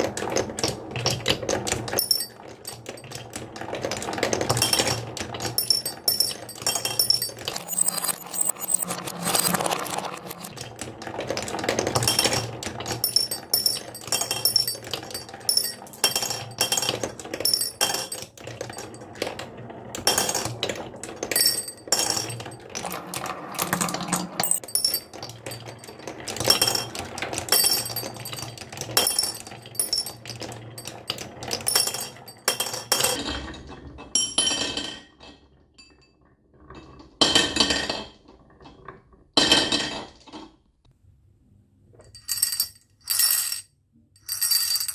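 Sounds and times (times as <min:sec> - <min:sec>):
marbles clattering down wooden run: 0:00.1 - 0:33.2.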